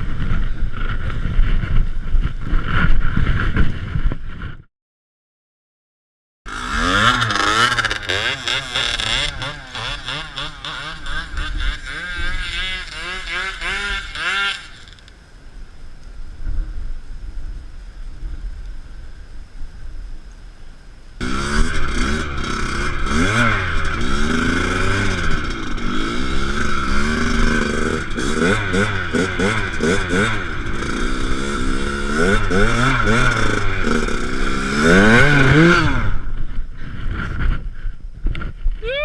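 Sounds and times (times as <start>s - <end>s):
motocross bike engine revving: 6.5s - 15.0s, 21.2s - 36.5s.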